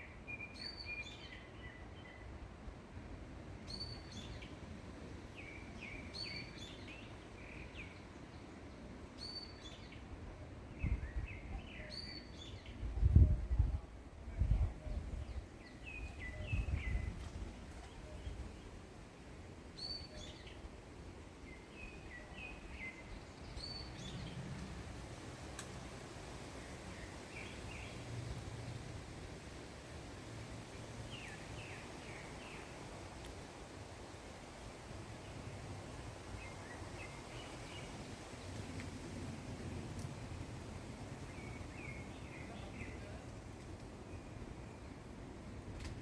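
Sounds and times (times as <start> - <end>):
songbird singing: 0.0 - 2.4, 3.6 - 45.1
wind buffeting microphone: 10.8 - 11.6, 12.7 - 18.6.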